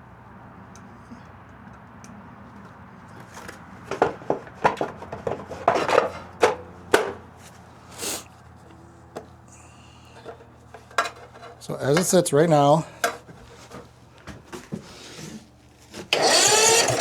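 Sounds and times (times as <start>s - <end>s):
hand tools clicking and knocking: 1.5s - 7.3s, 10.1s - 12.2s, 12.9s - 13.8s, 16.0s - 17.0s
short hiss: 7.9s - 8.3s.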